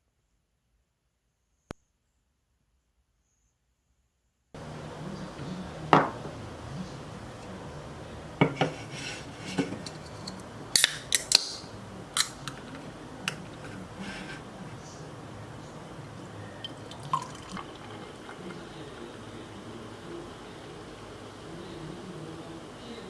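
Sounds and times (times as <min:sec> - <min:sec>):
dishes and cutlery clinking: 0:08.4 - 0:14.5.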